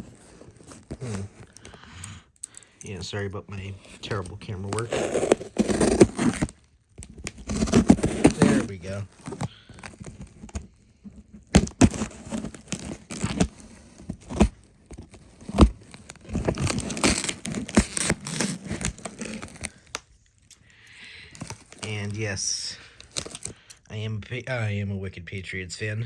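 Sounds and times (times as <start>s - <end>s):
cardboard tearing and crinkling: 3.7s - 10.8s, 11.4s - 20.0s, 21.4s - 22.2s, 23.0s - 23.6s
box knocks and clicks: 11.5s - 13.5s.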